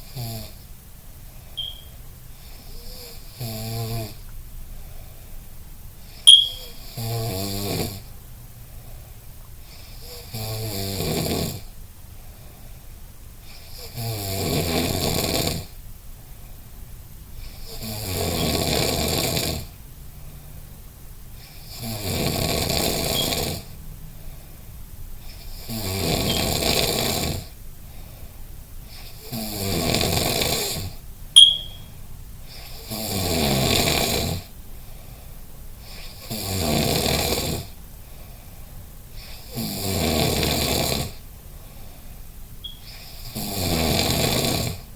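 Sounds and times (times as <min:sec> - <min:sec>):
rhythmic snoring: 0:00.0 - 0:00.7, 0:01.6 - 0:04.2, 0:06.0 - 0:08.1, 0:09.6 - 0:11.8, 0:13.4 - 0:15.8, 0:17.4 - 0:19.8, 0:21.4 - 0:24.6, 0:25.2 - 0:27.6, 0:28.8 - 0:31.0, 0:32.5 - 0:34.5, 0:35.8 - 0:37.8, 0:39.1 - 0:41.3, 0:42.7 - 0:44.9.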